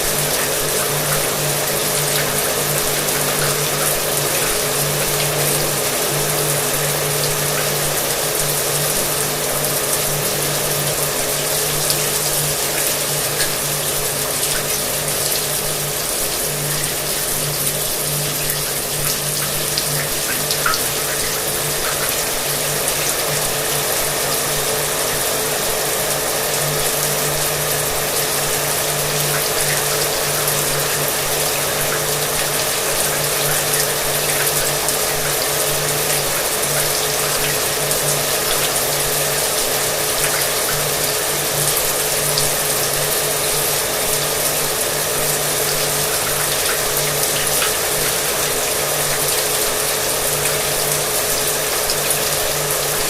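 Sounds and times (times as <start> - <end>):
shower water running: 0.0 - 53.0.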